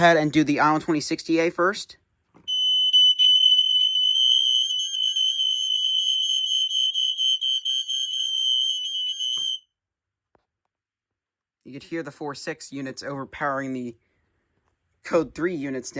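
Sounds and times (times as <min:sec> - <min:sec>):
shrill smoke alarm tone: 0:02.5 - 0:09.7.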